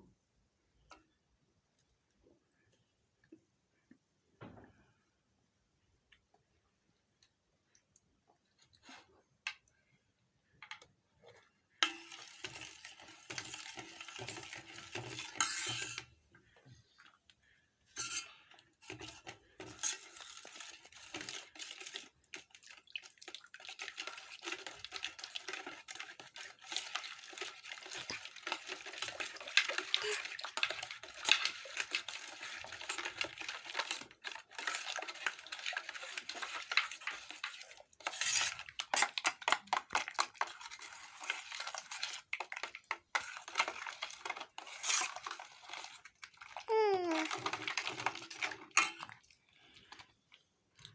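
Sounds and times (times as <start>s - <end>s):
utensils clinking against a dish: 13.4s - 16.1s, 18.0s - 21.8s, 27.0s - 45.8s, 47.1s - 49.2s.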